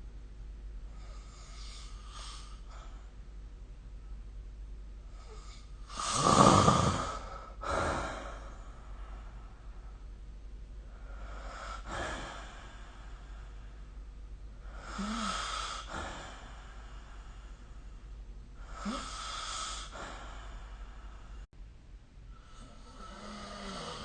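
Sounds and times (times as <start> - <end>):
person snoring: 5.2 - 9.0, 14.6 - 17.2, 18.6 - 21.4, 22.4 - 24.0.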